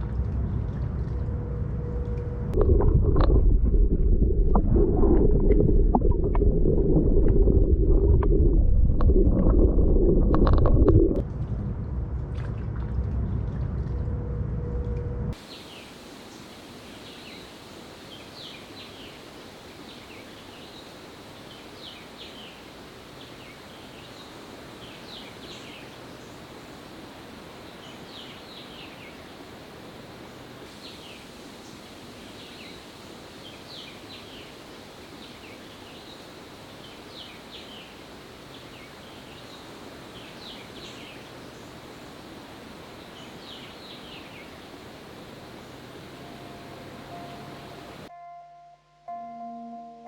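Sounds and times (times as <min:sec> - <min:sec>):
loud low rumble with gurgling: 0:00.0 - 0:15.4
outdoor ambience: 0:00.0 - 0:50.0.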